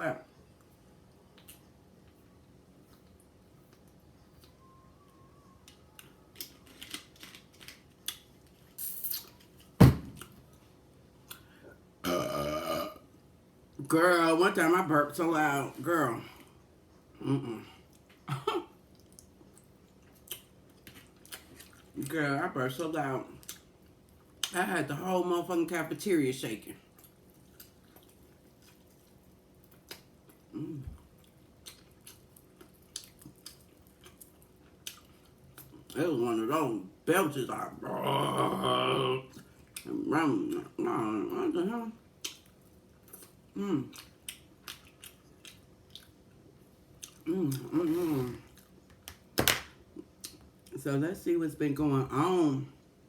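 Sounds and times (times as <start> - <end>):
mouth chewing and smacking: 1.3 - 2.2, 18.9 - 22.0, 26.9 - 36.0, 42.2 - 46.4, 47.0 - 49.2
loud thump: 9.8 - 10.2.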